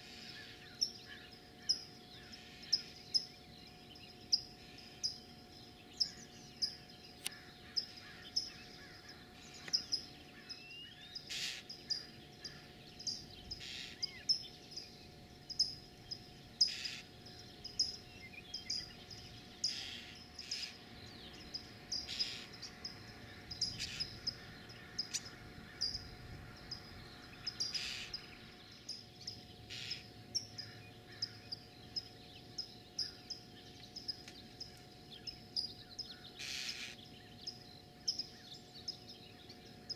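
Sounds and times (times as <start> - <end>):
owlets hissing begging calls: 11.3 - 11.7, 13.6 - 14.1, 16.6 - 17.1, 19.6 - 20.8, 27.7 - 28.2.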